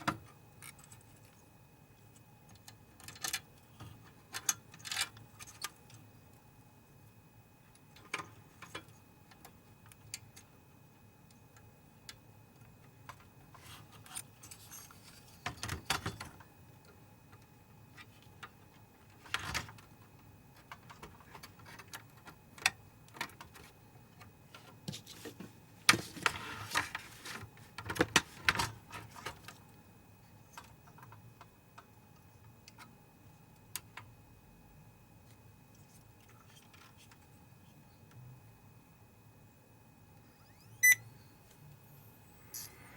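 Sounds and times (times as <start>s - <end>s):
faint steady hum: 0.0s - 42.9s
small parts clicking and rattling: 2.5s - 6.0s.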